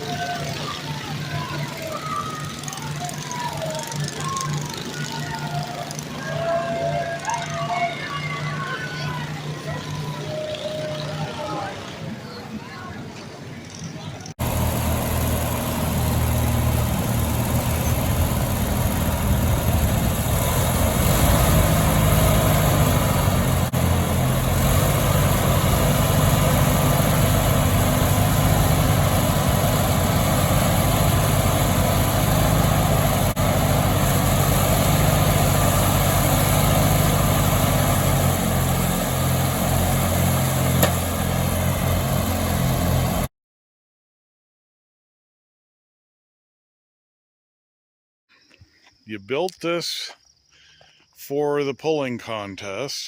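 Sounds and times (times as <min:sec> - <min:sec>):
riding lawn mower engine: 0:00.0 - 0:12.6, 0:13.7 - 0:43.3.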